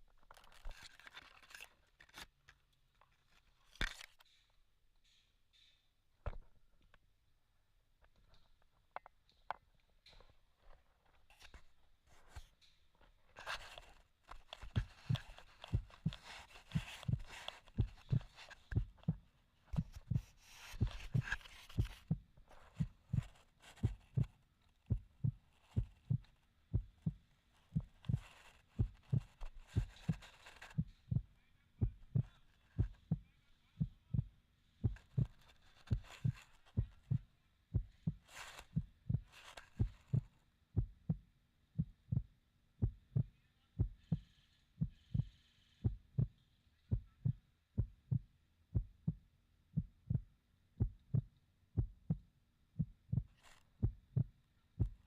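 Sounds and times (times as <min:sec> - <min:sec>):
footsteps walking: 0:14.3 - 0:19.2, 0:19.8 - 0:26.3.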